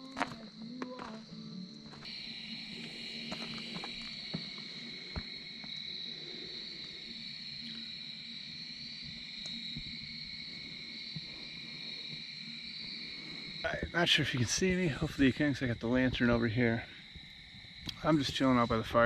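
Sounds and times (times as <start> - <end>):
campfire crackling: 0.0 - 19.0
night insects chorus: 0.0 - 19.0.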